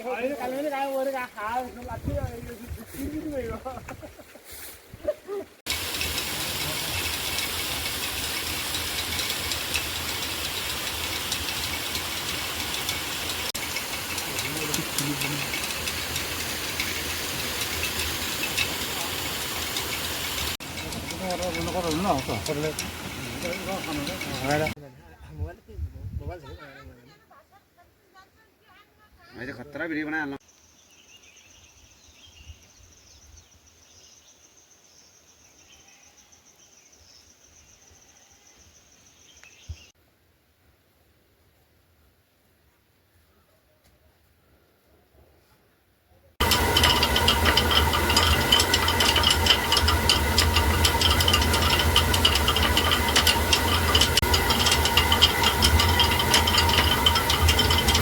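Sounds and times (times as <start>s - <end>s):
rapid ticking and rattling: 5.7s - 24.8s, 46.4s - 58.0s
steady low hum: 46.4s - 58.0s.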